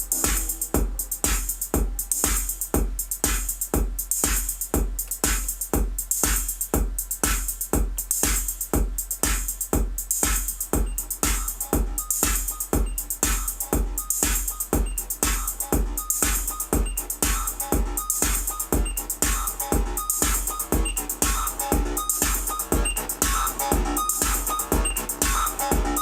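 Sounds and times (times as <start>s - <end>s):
drum machine beat: 0.0s - 26.0s
analog synth line: 10.8s - 26.0s.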